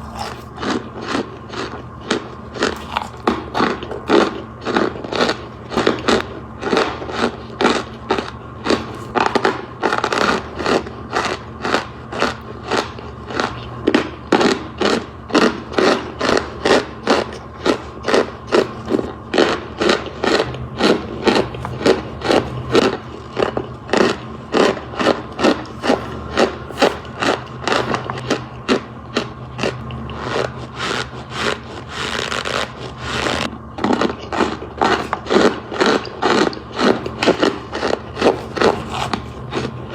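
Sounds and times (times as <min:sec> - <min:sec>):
dry material crushed and scraped: 0:00.0 - 0:00.7, 0:08.6 - 0:10.7, 0:30.1 - 0:39.9
faint steady hum: 0:00.0 - 0:39.9.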